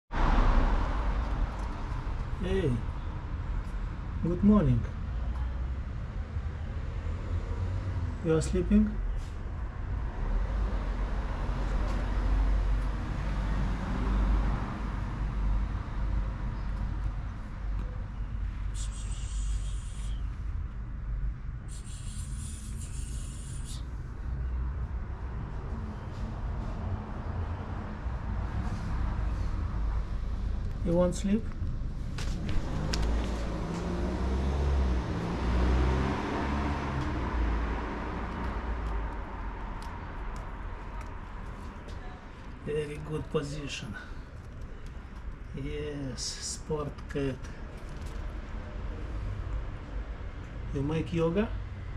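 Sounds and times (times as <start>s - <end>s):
road noise: 0.1s - 51.9s
street traffic rumble: 0.1s - 51.9s.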